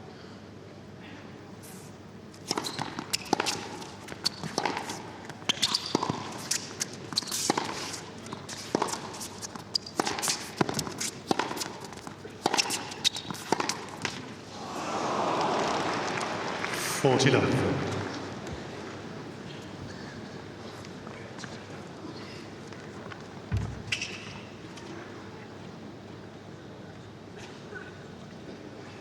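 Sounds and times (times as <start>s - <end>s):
racquets hitting tennis ball: 2.4s - 14.4s
footsteps on court: 22.6s - 24.9s
ball bouncing: 23.5s - 24.2s.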